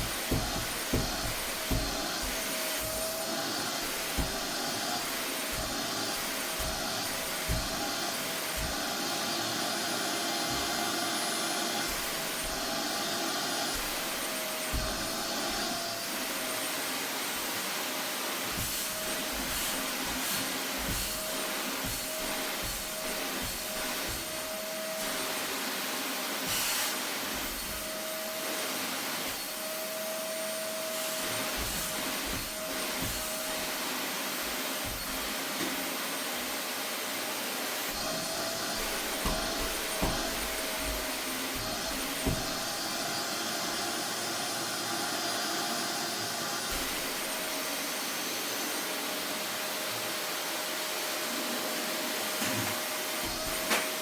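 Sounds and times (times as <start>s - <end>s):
vacuum cleaner running: 0.0s - 54.0s.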